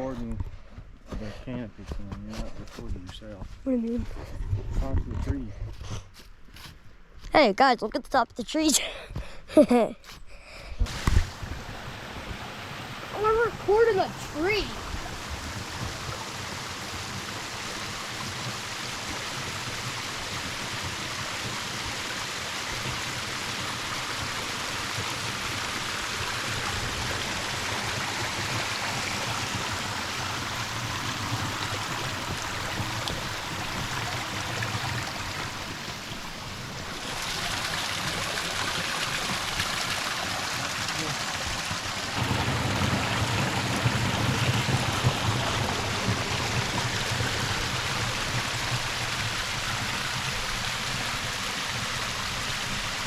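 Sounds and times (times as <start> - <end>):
stream water rushing: 10.8 - 53.0.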